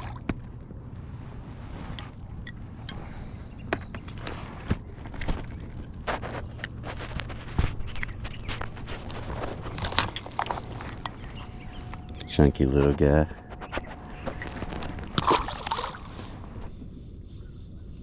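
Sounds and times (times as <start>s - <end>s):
steady low hum: 0.0s - 18.0s
fishing tackle clicks and knocks: 3.6s - 6.8s.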